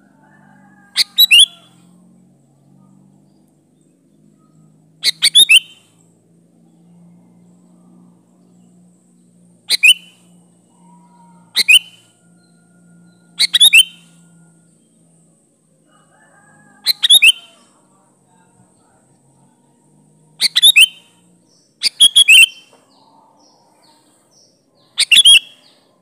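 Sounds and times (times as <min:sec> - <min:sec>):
faint low hum: 0:00.0 - 0:26.0
bulbul chirping: 0:01.0 - 0:01.6, 0:05.0 - 0:05.9, 0:09.7 - 0:10.3, 0:11.6 - 0:12.0, 0:13.4 - 0:14.2, 0:16.9 - 0:17.6, 0:20.4 - 0:22.7, 0:25.0 - 0:25.6.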